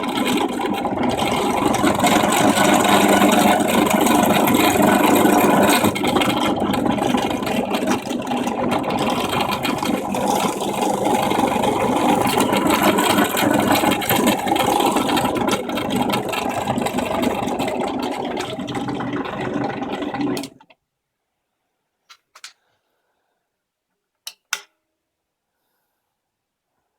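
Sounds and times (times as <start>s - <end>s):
drill press drilling into wood: 0.0s - 20.6s.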